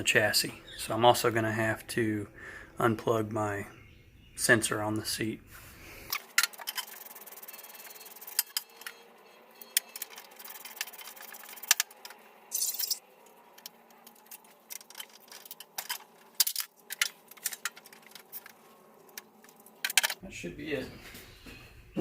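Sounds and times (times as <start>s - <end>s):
sharp clicks and light rattles: 6.1s - 9.0s, 9.6s - 20.2s.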